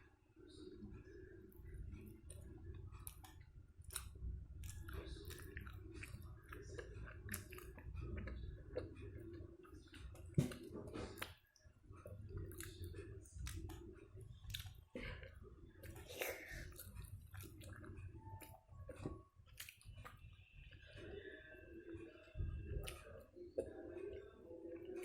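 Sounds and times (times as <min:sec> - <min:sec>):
person chewing: 0:01.6 - 0:21.0.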